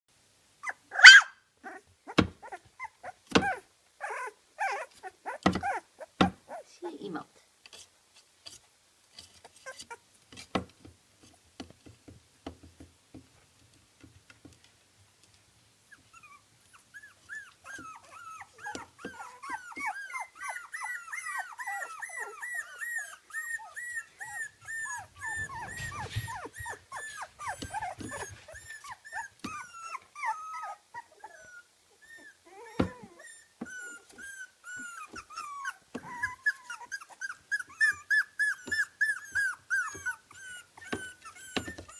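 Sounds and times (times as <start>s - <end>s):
puppies yipping: 0.6s - 6.6s, 16.0s - 41.9s
puppies whimpering: 0.6s - 6.7s, 16.0s - 41.9s.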